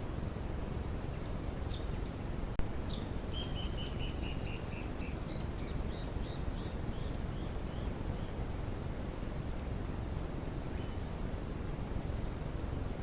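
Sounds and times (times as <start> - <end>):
low background hiss: 0.0 - 13.0
birds chirping: 0.6 - 8.7, 10.7 - 11.2.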